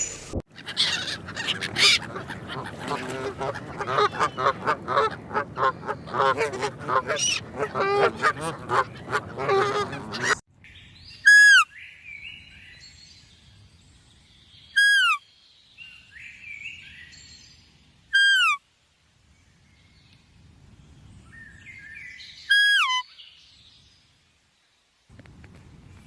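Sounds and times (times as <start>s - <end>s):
bird calling loudly: 0.5s - 10.4s.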